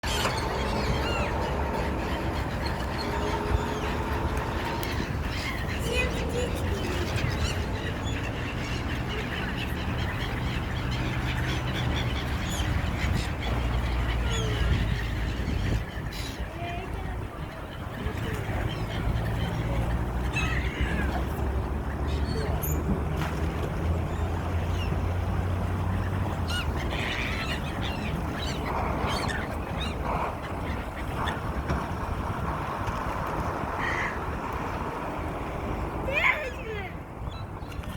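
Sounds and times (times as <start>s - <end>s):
steady low rumble: 0.0s - 19.9s
flock of birds calling: 0.0s - 23.1s, 24.0s - 37.9s.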